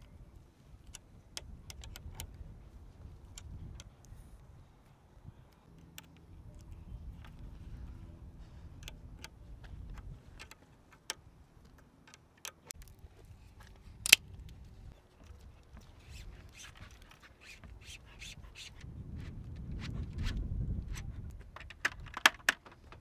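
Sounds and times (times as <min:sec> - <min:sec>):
bicycle parts clicking and tapping: 0:00.8 - 0:02.3, 0:08.7 - 0:13.0, 0:14.0 - 0:14.2
faint low rumble: 0:02.2 - 0:10.4.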